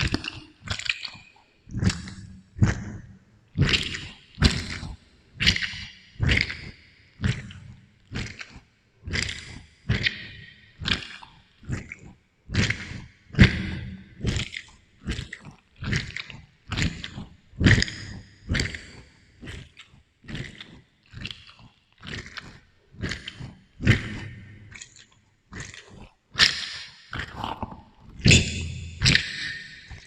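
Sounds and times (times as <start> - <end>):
wet chewing of fruit: 0.0 - 2.9, 14.2 - 30.0.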